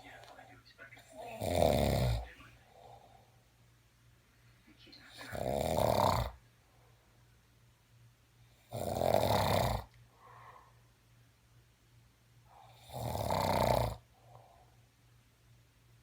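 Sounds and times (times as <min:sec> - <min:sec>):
person snoring: 0:01.1 - 0:03.2, 0:05.1 - 0:06.4, 0:08.7 - 0:09.9, 0:12.6 - 0:14.0
soft breath: 0:02.2 - 0:03.5, 0:10.0 - 0:11.0, 0:14.1 - 0:14.9.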